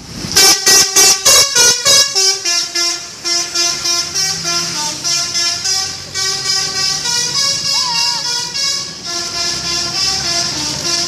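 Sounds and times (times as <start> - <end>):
multi-tone air horn tune: 0.4 - 11.0.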